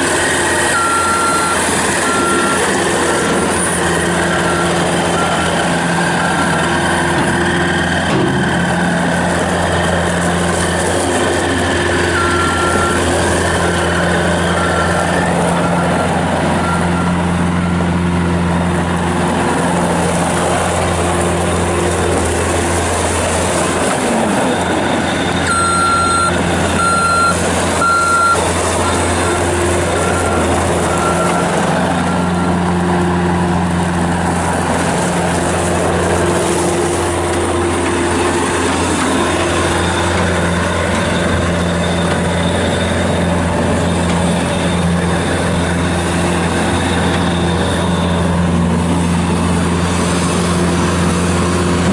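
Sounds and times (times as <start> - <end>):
diesel engine running: 0.0 - 51.9
backup alarm beeping: 0.7 - 5.5, 12.2 - 15.9, 25.3 - 32.6.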